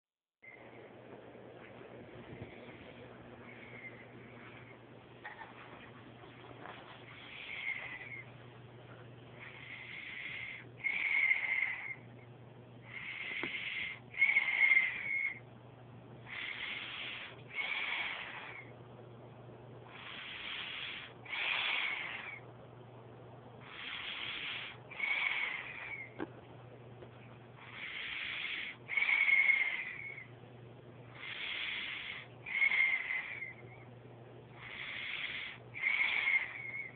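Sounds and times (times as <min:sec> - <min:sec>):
child breathing with wheezing: 0:12.9 - 0:15.4, 0:16.3 - 0:18.7, 0:19.9 - 0:22.4, 0:23.6 - 0:26.2.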